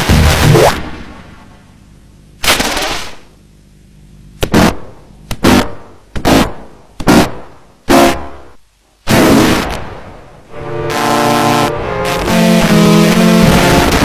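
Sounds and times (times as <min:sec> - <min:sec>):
loud bang-like bursts: 0:09.1 - 0:14.0.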